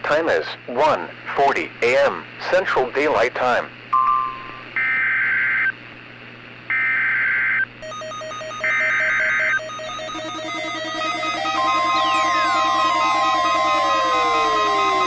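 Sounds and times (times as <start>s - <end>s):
harsh buzzing data bursts: 6.7s - 15.0s
rapid stepped electronic beeping: 8.4s - 15.0s.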